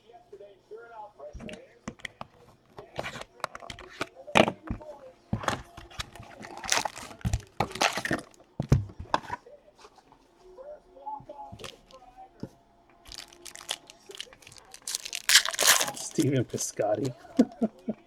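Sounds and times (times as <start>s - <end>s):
cardboard clicks and knocks: 1.4s - 9.4s
wrapper crinkling and tearing: 5.5s - 8.4s, 13.1s - 17.6s.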